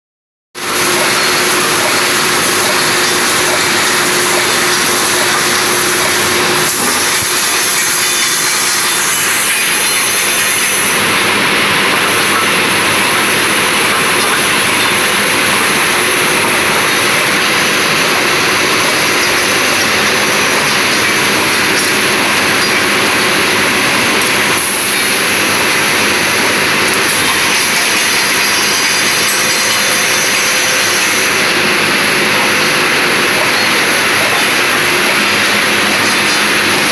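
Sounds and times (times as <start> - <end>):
welding machine running with hiss: 0.6 - 36.9.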